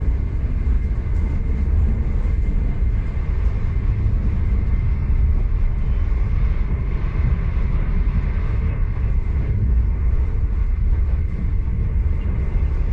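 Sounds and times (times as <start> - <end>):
train rumbling on track: 0.0 - 12.9.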